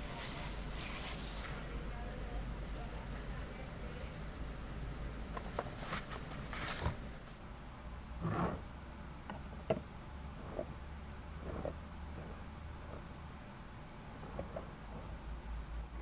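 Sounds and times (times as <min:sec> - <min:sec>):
objects being handled: 0:00.0 - 0:01.8, 0:05.4 - 0:07.4
low steady hum: 0:00.0 - 0:16.0.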